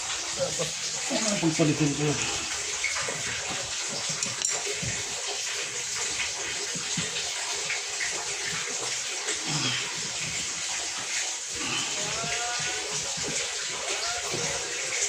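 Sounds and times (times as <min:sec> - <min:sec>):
water running and splashing: 0:00.0 - 0:15.0.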